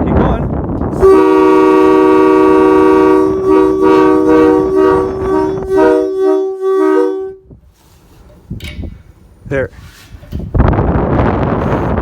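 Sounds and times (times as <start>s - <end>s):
locomotive air horns blasting: 0.9s - 7.5s.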